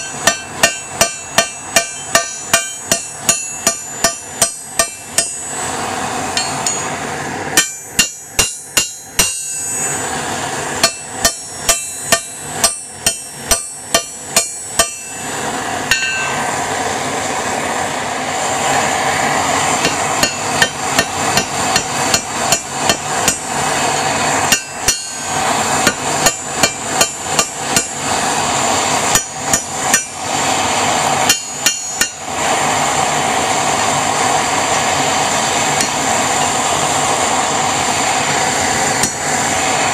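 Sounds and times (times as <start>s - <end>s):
hammer striking metal on anvil: 0.0s - 5.6s, 6.3s - 10.0s, 10.8s - 15.3s, 15.9s - 16.4s, 19.8s - 28.0s, 29.1s - 30.2s, 31.2s - 32.3s, 35.8s - 36.0s, 39.0s - 39.2s
steady rushing noise: 0.0s - 39.9s.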